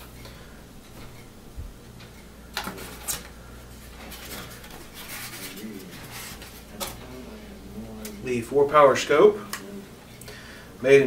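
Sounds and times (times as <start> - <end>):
rustling packaging: 2.6 - 7.2.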